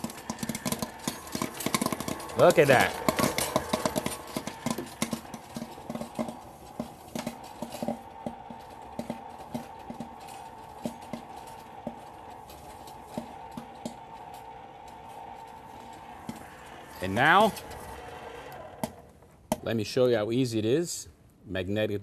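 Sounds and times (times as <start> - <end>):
popcorn popping: 0.0 - 19.8.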